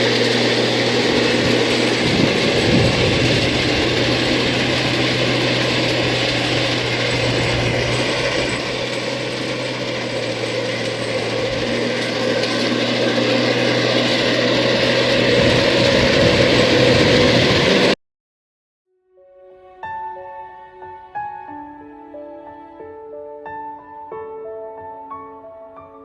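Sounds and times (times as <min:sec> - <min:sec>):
combine harvester running: 0:00.0 - 0:18.0.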